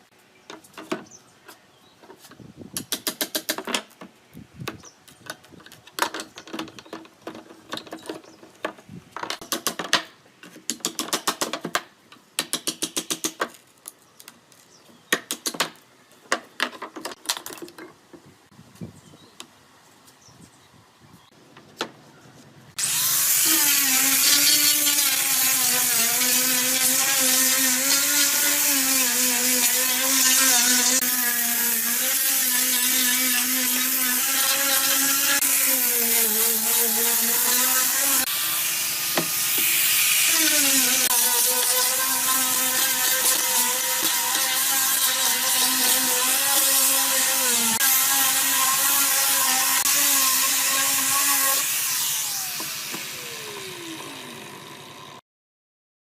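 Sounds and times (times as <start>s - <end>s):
power tool cutting wood: 22.8s - 55.2s.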